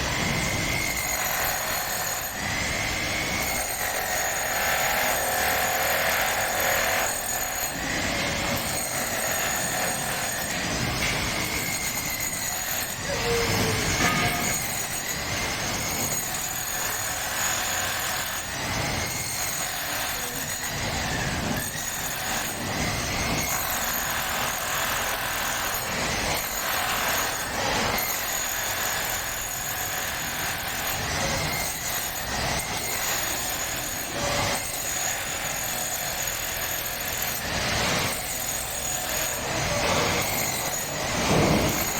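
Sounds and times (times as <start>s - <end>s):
electric drill boring into concrete: 0.0s - 41.9s.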